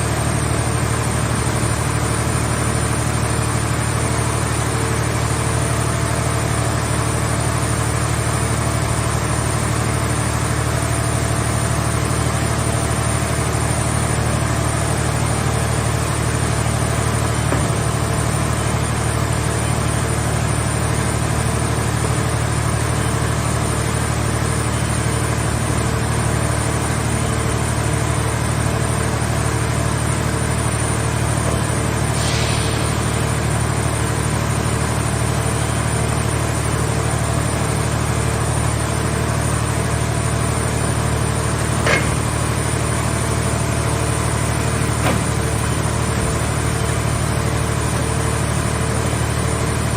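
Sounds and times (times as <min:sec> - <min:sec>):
baler engine idling: 0:00.0 - 0:49.9
sharp knocks: 0:17.5 - 0:18.1, 0:41.8 - 0:42.4
brief hiss: 0:32.2 - 0:33.0.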